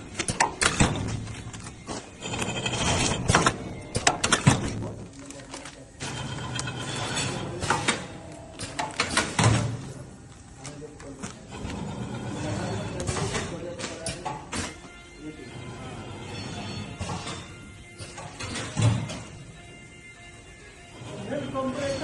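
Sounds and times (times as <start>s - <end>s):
machine humming: 0.0s - 10.5s
mechanical clicks and clunks: 0.1s - 9.7s.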